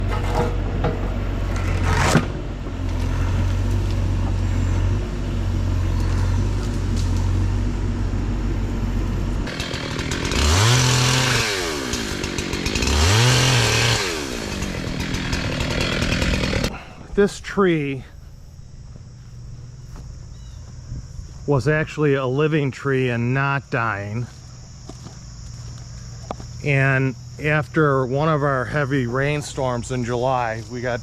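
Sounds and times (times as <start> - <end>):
chainsaw idling and revving: 9.4 - 16.8.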